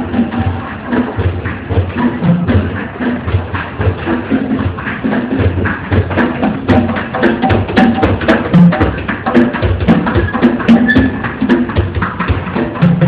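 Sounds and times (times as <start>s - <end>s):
escalator rhythmic knocking: 0.0s - 13.0s
escalator squealing: 10.3s - 11.2s.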